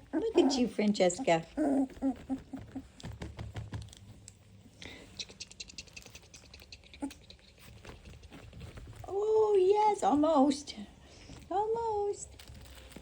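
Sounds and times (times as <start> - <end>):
puppy claws scrabbling on floor: 0.2 - 4.5, 5.8 - 10.3, 12.2 - 13.0.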